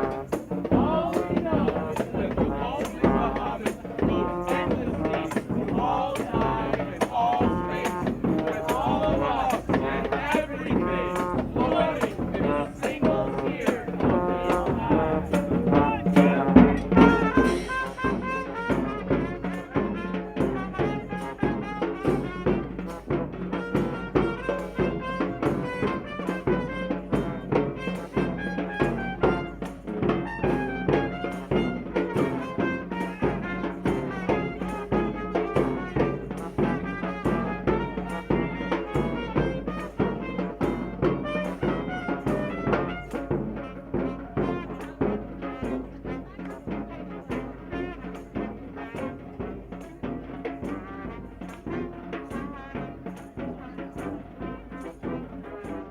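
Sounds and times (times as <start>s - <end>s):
steady drum beat: 0.0s - 17.4s
trumpets and trombones: 0.0s - 55.9s.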